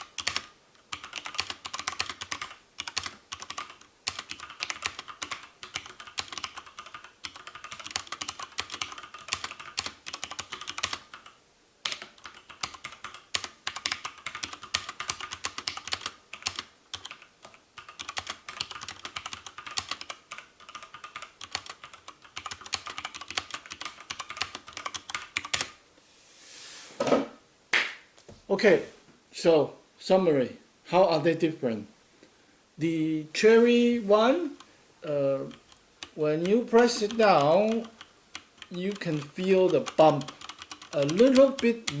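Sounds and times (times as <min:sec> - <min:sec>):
fast typing on mechanical keyboards: 0:00.0 - 0:25.8, 0:35.4 - 0:42.0.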